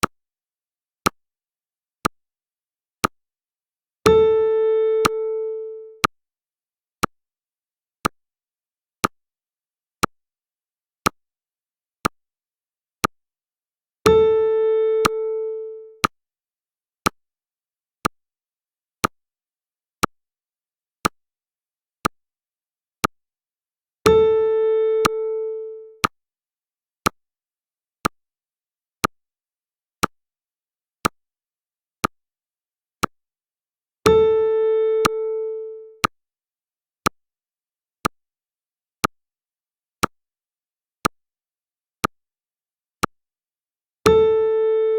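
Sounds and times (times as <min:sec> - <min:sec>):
timer ticking: 0:25.0 - 0:25.2, 0:35.0 - 0:35.3.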